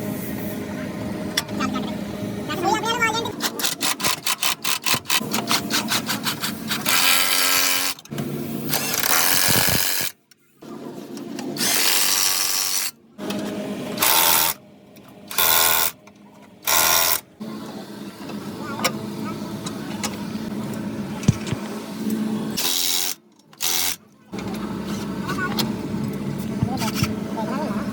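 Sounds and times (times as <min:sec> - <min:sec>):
power tool ticking and running: 0:03.4 - 0:06.0, 0:06.7 - 0:10.2, 0:16.6 - 0:19.0, 0:19.6 - 0:24.6.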